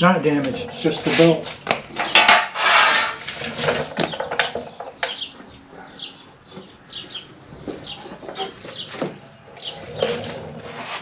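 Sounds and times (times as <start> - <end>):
bird chirping: 3.2 - 10.7
handling clicks and knocks: 3.3 - 5.9.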